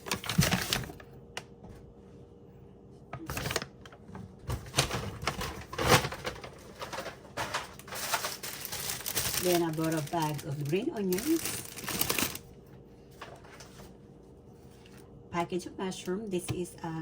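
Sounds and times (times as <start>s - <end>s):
plastic packaging crinkling: 0.0s - 1.1s, 4.5s - 12.5s.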